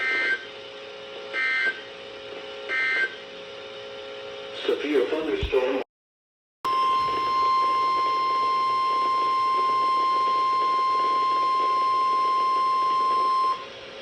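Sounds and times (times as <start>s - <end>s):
radio hiss: 4.6s - 5.8s
steady high alarm tone: 6.7s - 13.6s.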